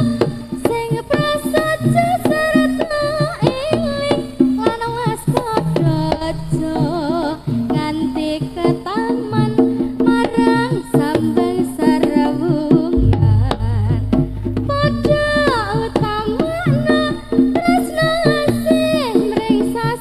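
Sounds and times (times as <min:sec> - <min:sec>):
hand drums playing a busy beat: 0:00.0 - 0:20.0
melodic lead bending in pitch: 0:13.0 - 0:15.8
deep low tone: 0:13.0 - 0:16.2.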